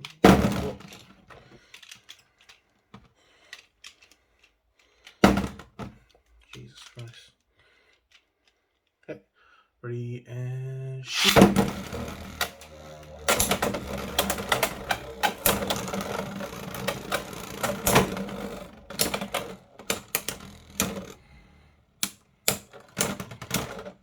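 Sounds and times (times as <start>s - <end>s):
spinning tops clacking: 11.1s - 21.2s
scattered clicks: 11.2s - 21.4s.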